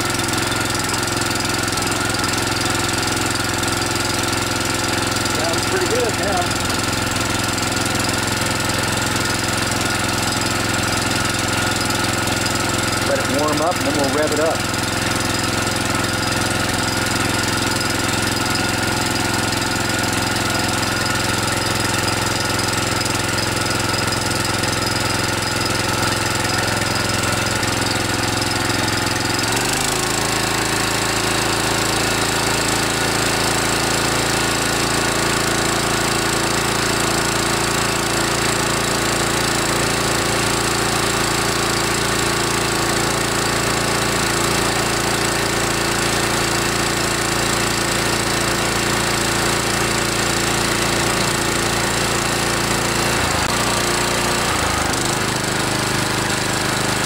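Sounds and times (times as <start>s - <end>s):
small engine running: 0.0s - 57.0s.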